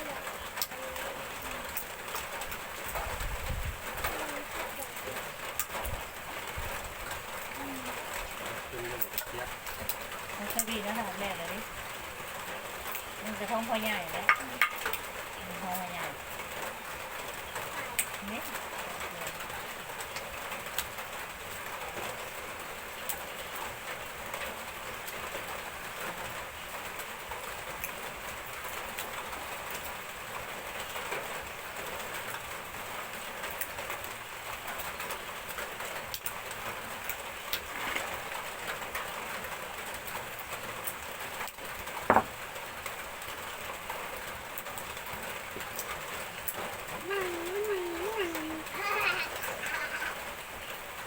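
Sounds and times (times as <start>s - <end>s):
steady rain falling: 0.0s - 51.0s.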